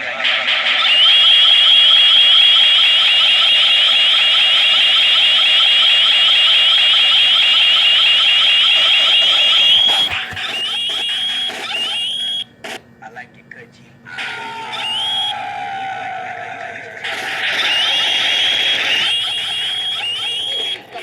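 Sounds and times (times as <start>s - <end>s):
high-pitched electronic alarm warbling: 0.8s - 12.5s, 14.8s - 15.4s, 17.2s - 21.0s.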